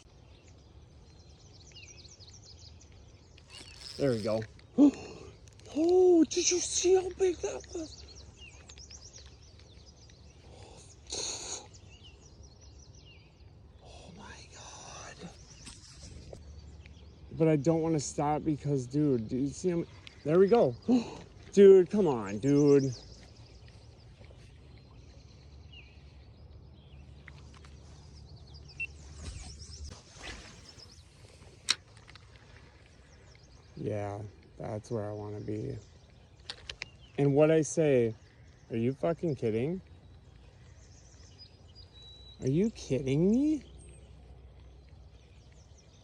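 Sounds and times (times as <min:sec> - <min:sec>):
small birds chirping: 0:00.0 - 0:46.0.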